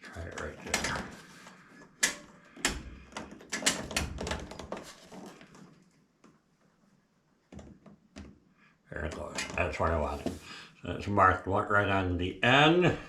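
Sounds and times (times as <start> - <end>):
dryer control panel clicks: 2.0 - 4.1.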